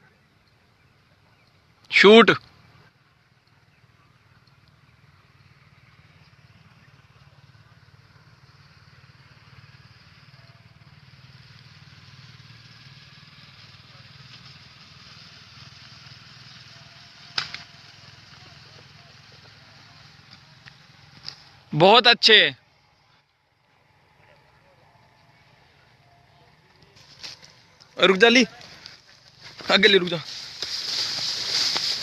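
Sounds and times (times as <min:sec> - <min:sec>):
faint outdoor background: 0:00.0 - 0:32.0
small crack: 0:17.3 - 0:17.7.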